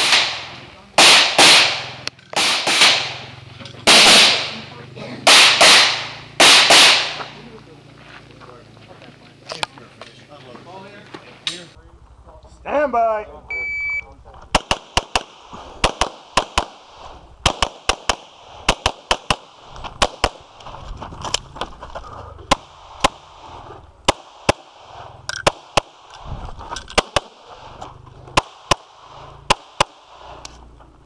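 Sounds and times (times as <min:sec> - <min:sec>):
rapid pistol fire: 0:00.0 - 0:04.6, 0:05.2 - 0:07.4, 0:14.5 - 0:20.5, 0:24.0 - 0:26.1, 0:27.0 - 0:27.5, 0:28.3 - 0:30.4.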